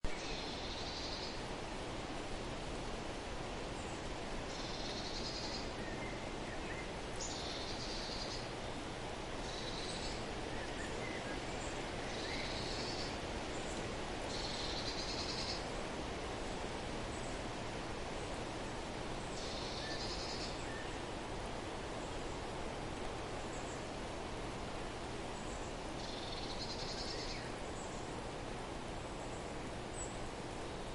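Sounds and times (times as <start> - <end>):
outdoor background hiss: 0.0 - 30.9
small bird calling: 0.1 - 1.4, 3.8 - 8.8, 9.4 - 15.8, 19.2 - 21.0, 25.4 - 28.1.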